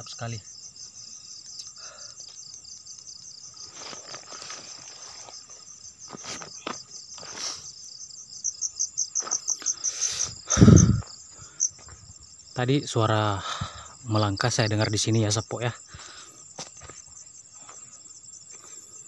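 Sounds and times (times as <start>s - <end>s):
insects trilling: 0.0s - 19.0s
loud pulsing insect chirp: 0.0s - 19.0s
rustles: 0.8s - 8.0s.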